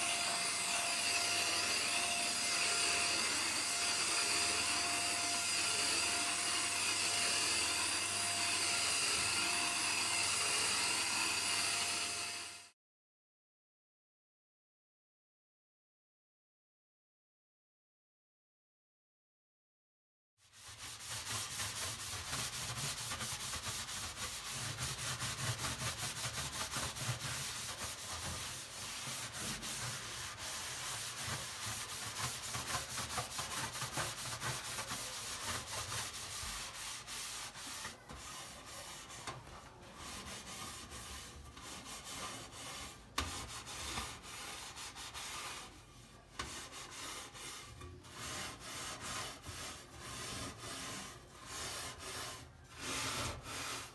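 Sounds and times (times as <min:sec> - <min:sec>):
scrubbing on hard surface: 0:20.4 - 0:53.9.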